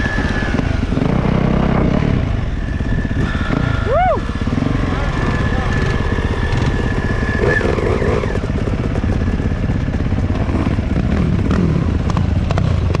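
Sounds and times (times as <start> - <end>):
dirt bike engine running: 0.0 - 13.0.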